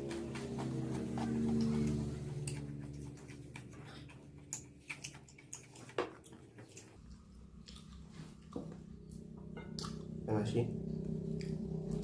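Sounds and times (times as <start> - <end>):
wet chewing mouth sounds: 0.0 - 8.8.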